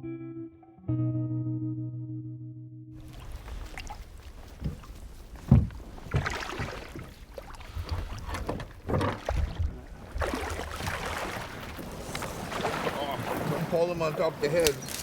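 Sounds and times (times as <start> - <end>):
guitar chord: 0.0 - 3.0
dull knocks and thumps: 4.3 - 10.3.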